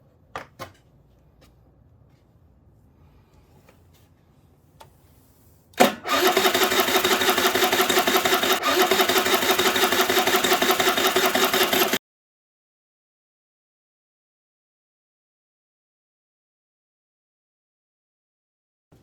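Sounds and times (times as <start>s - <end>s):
scooter engine starting and idling: 5.8s - 12.0s.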